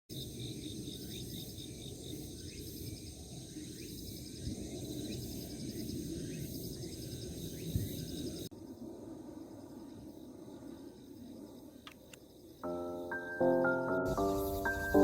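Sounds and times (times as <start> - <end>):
crickets chirping: 0.1 - 15.0
short rising notes: 12.6 - 15.0.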